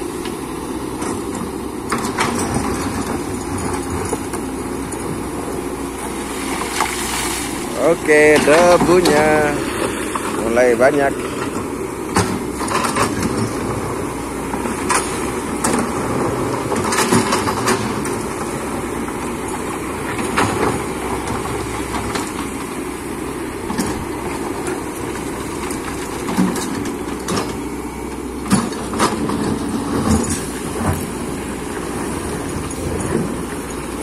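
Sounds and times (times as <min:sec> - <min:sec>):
excavator diesel engine: 0:00.0 - 0:34.0
knocks and clunks: 0:28.4 - 0:34.0.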